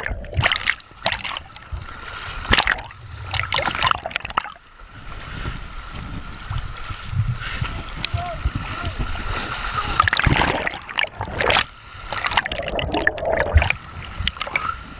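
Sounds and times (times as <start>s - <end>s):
rush of flowing water: 0.0s - 14.9s
water splashing around kayak: 0.0s - 14.9s.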